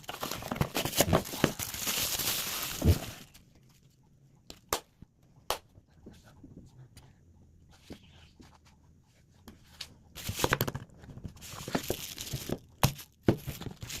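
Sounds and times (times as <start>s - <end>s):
packaging tearing and crackling: 0.0s - 3.4s, 11.5s - 14.0s.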